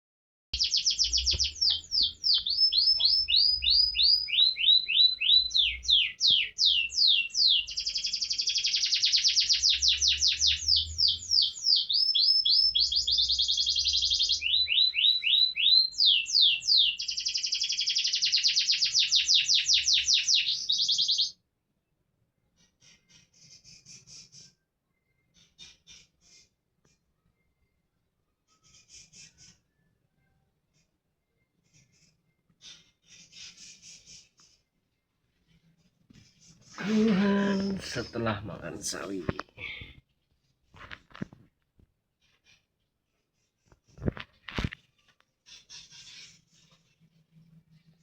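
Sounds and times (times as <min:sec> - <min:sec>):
canary singing trills: 0:00.6 - 0:21.4.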